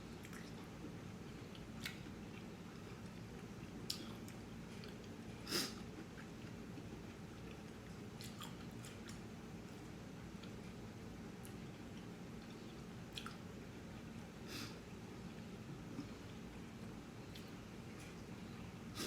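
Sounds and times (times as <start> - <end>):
person chewing: 1.4 - 10.7, 11.4 - 13.4.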